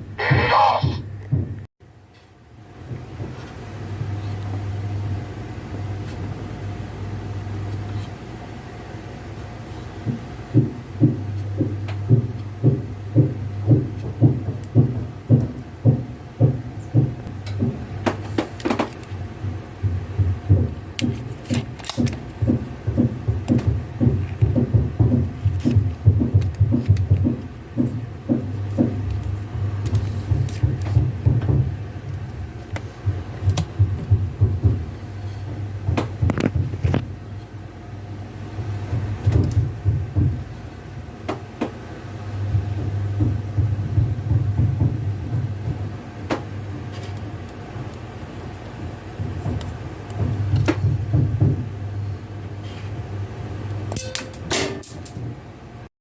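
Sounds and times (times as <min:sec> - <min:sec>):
gear mechanism knocking: 0:19.9 - 0:31.8.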